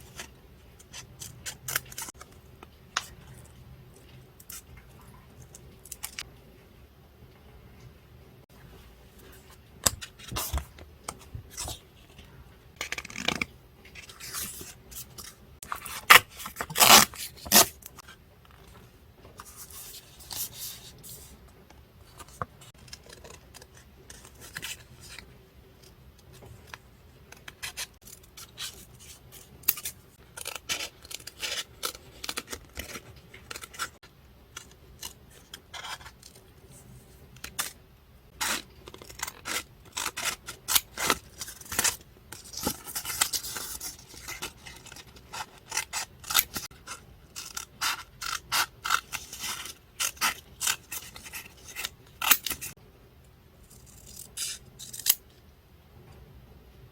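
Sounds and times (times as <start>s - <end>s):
paper rustling and tearing: 14.0s - 17.8s.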